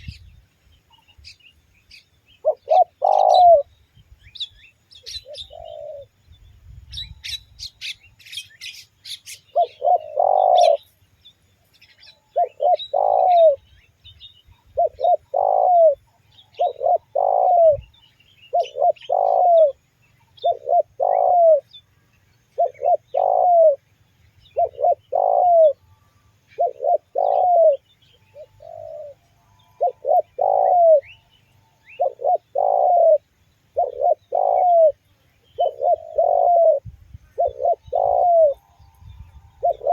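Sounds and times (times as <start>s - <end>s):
doves cooing: 2.4s - 3.7s, 5.1s - 6.2s, 9.3s - 10.9s, 12.2s - 13.7s, 14.7s - 21.7s, 22.6s - 23.9s, 24.5s - 39.9s.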